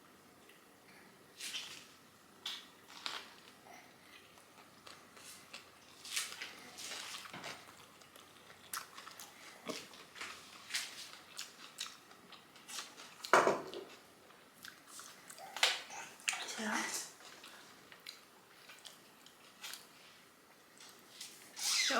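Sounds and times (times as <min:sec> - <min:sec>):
person chewing with mouth clicks: 0:04.2 - 0:13.3.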